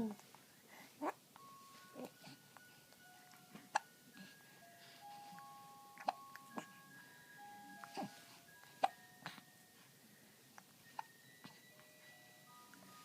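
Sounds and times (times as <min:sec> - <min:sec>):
tinkling electronic toy tune: 0:01.4 - 0:13.0.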